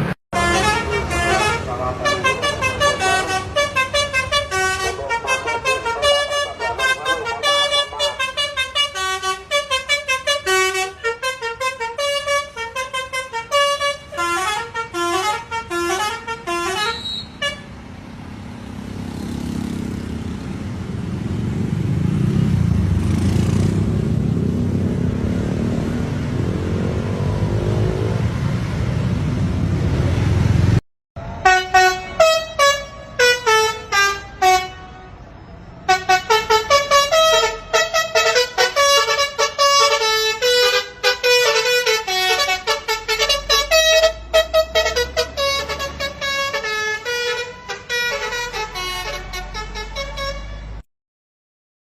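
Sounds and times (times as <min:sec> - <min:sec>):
heavy vehicle engine rumble: 0:00.0 - 0:19.2, 0:23.7 - 0:50.8
bus horn playing melodic tunes: 0:00.3 - 0:17.8, 0:31.3 - 0:50.8.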